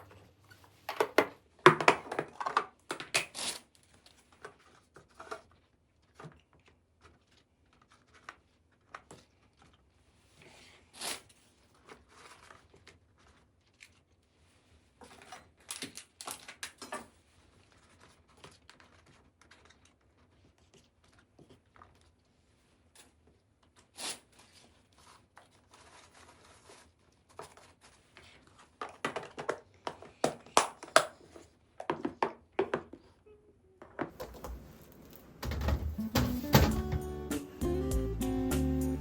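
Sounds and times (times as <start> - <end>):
clicks and taps of handled items: 0.0 - 3.3.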